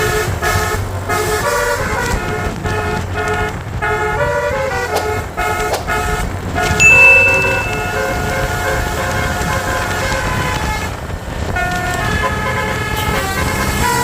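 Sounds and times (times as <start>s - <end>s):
shrill high steady tone: 6.8s - 8.6s.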